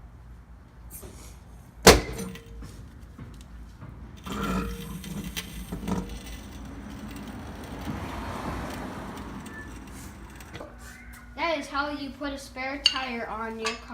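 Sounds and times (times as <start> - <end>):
metal clank of trolley jack: 1.8 - 2.7.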